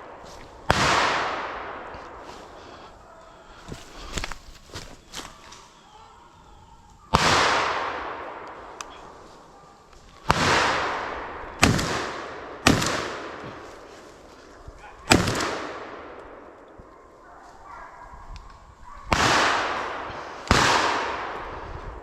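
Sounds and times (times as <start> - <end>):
gunshots with echo: 0.0 - 2.6, 7.1 - 9.5, 10.2 - 14.2, 15.0 - 16.6, 19.1 - 22.0.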